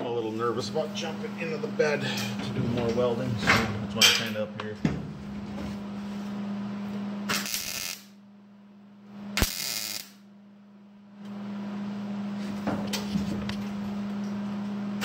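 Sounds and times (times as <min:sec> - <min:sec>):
electrical hum: 0:00.0 - 0:15.0
welding crackle: 0:07.3 - 0:08.2, 0:09.4 - 0:10.2.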